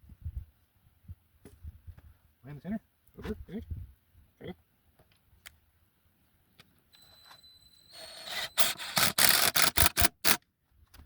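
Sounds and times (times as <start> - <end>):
power drill cutting into steel: 7.0 - 10.4.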